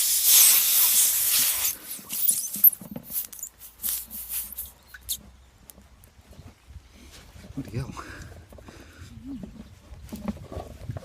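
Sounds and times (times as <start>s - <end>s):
air hissing from tyre: 0.0s - 5.1s.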